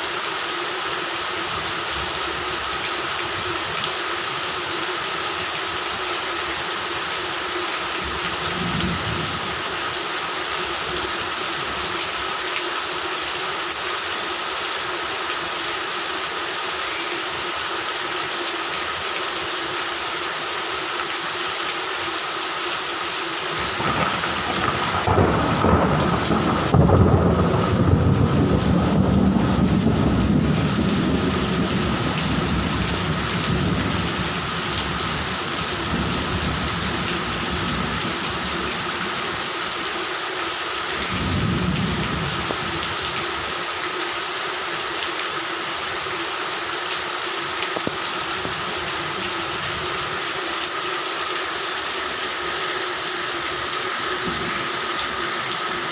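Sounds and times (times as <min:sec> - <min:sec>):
steady rain: 0:00.0 - 0:55.9
thunder rumbling: 0:23.6 - 0:34.0.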